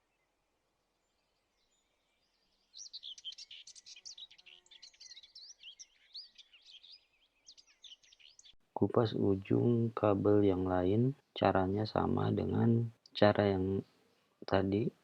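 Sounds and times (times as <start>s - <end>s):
birds chirping and singing: 0.0s - 9.2s.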